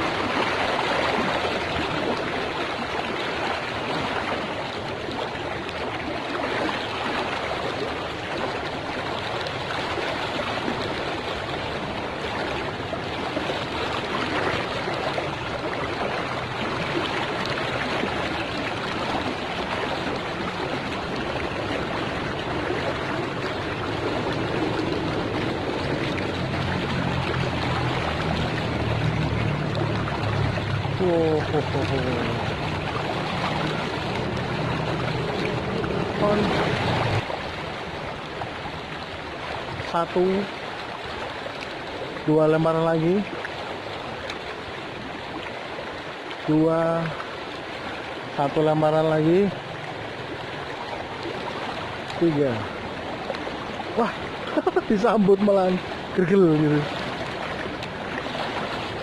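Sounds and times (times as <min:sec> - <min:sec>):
river current rushing: 0:00.0 - 0:59.0
low hum: 0:19.2 - 0:38.4.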